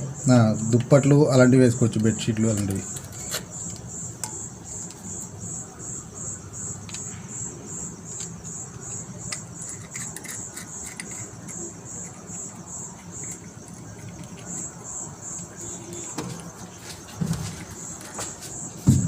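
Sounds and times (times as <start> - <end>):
cricket chirping: 0.0 - 19.0
handling clicks and knocks: 1.8 - 5.4, 8.1 - 19.0.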